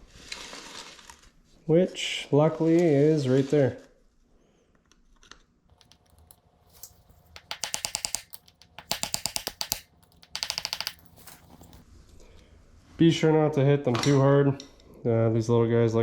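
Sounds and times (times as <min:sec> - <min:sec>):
light metallic clicks: 0:05.8 - 0:11.8.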